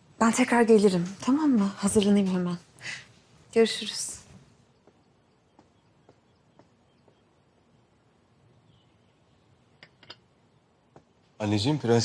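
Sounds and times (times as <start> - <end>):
faint footsteps: 0.8 - 11.4
light tapping sounds: 4.2 - 9.0, 9.6 - 11.4.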